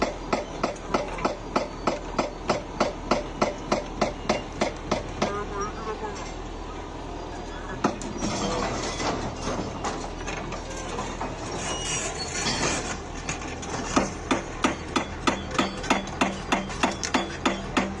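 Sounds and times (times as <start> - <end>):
excavator diesel engine running: 0.0 - 18.0
scraping and clatter: 8.0 - 14.2.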